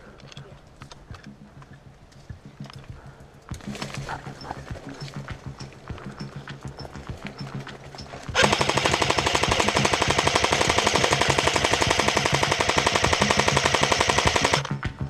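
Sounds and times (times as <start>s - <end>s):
airsoft gun full-auto burst: 8.3s - 14.7s.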